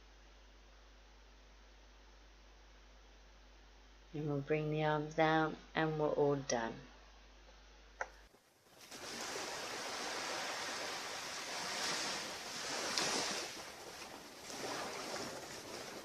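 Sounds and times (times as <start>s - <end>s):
ocean waves washing onto beach: 8.8s - 16.0s.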